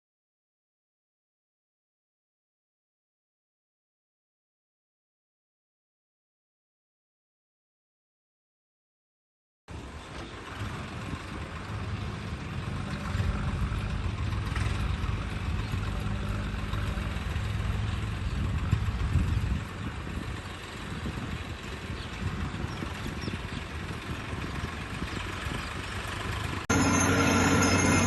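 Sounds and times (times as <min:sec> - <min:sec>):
construction machinery engine running: 0:09.7 - 0:28.0.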